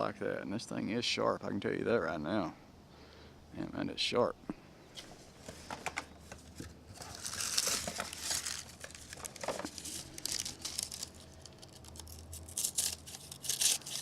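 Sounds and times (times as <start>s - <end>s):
paper crinkling and rasping: 5.2s - 14.0s.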